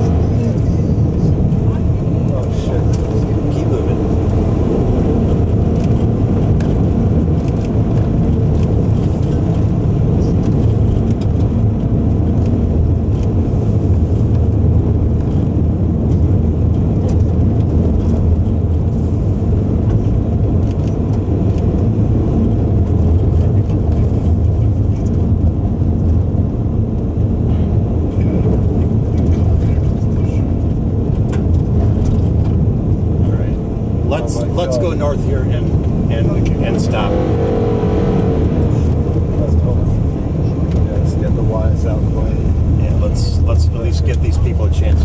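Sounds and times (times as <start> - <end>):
car interior road noise: 0.0 - 45.0.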